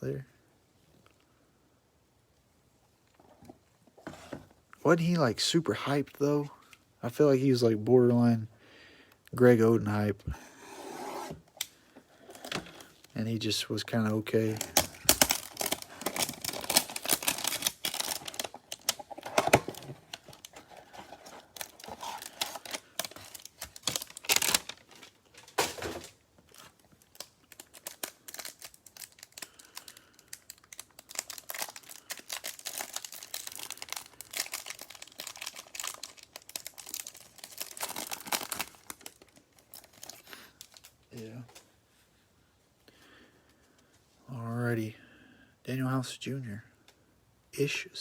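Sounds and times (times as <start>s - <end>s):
wrapper crinkling: 12.2s - 41.4s
wrapper ripping: 14.3s - 41.0s.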